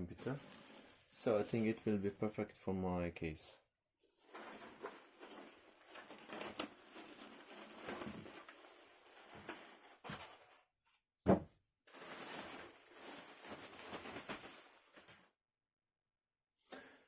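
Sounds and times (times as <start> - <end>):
rustling and scraping: 0.2 - 2.0, 4.0 - 10.7, 11.9 - 15.3.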